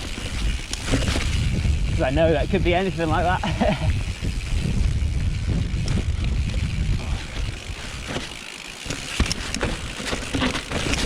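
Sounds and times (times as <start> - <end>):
wind rumble on microphone: 0.0 - 8.3
bike knocking and rattling: 0.0 - 11.0
tyres on dirt: 0.0 - 11.0.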